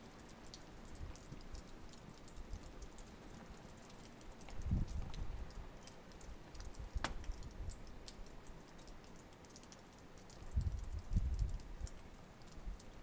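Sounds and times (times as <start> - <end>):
light ticks and clicks: 0.0 - 13.0
wind buffeting microphone: 4.5 - 5.6, 10.5 - 11.8.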